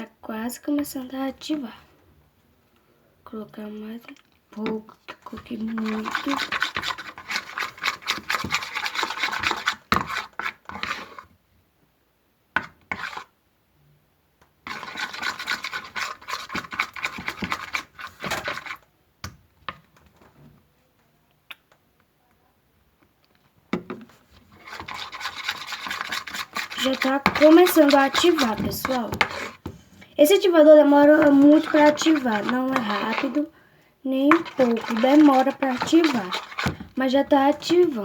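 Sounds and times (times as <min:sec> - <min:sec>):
spoon scraping in a bowl: 0:04.6 - 0:11.3, 0:12.6 - 0:13.3, 0:14.7 - 0:18.8, 0:24.0 - 0:33.5, 0:34.2 - 0:38.0.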